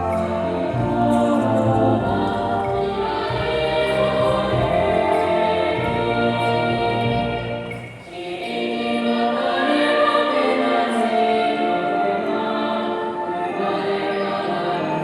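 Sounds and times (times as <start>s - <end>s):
brass band playing: 0.0s - 8.0s
choir singing: 0.0s - 15.0s.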